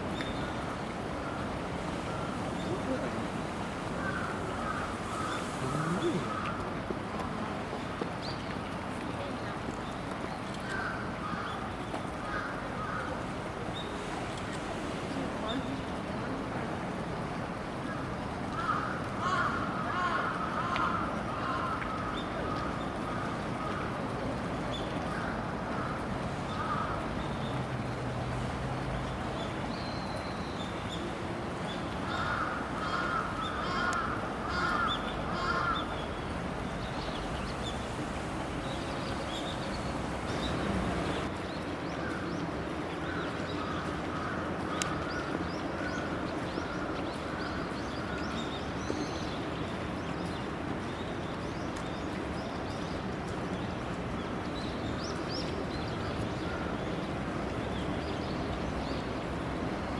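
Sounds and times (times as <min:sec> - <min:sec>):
steady background noise: 0:00.0 - 0:59.9
crows cawing: 0:04.0 - 0:06.6, 0:18.6 - 0:21.8, 0:32.1 - 0:35.9.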